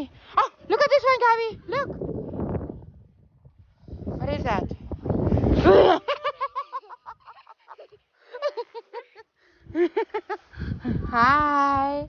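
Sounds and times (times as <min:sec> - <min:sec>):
small child giggling: 0:05.6 - 0:09.2.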